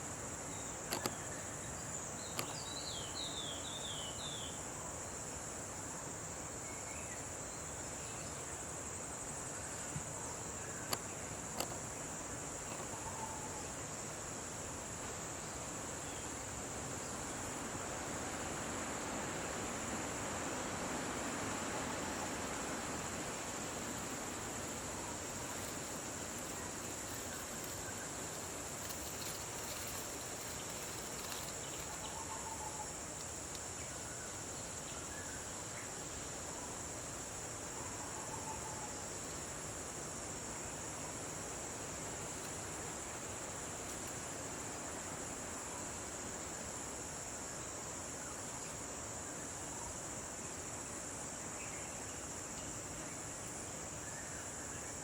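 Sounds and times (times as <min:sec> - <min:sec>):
insects chorus shrill hum: 0:00.0 - 0:55.0
faint bird chirps: 0:12.6 - 0:13.8, 0:31.2 - 0:33.0.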